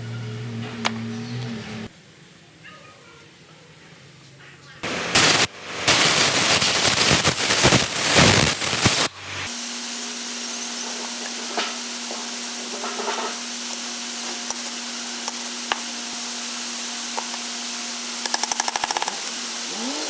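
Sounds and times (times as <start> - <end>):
steady mechanical hum: 0.0 - 2.3.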